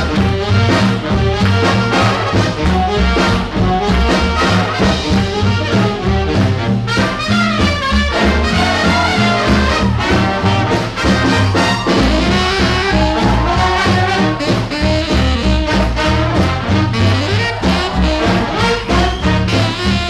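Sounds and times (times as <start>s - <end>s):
brass section playing: 0.0s - 20.0s
swing band music: 0.0s - 20.0s.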